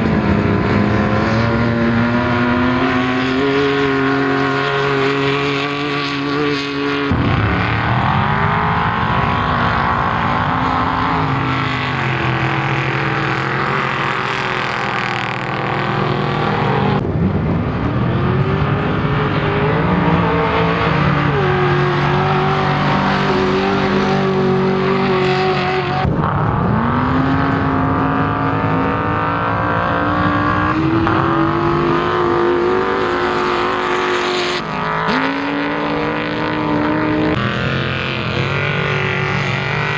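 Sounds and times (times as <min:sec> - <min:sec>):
race vehicle engines revving: 0:00.0 - 0:39.9.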